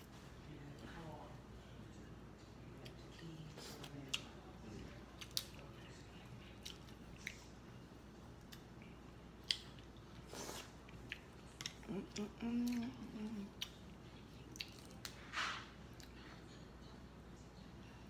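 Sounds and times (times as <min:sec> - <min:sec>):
chewing and biting: 0:02.8 - 0:07.6, 0:08.4 - 0:16.2.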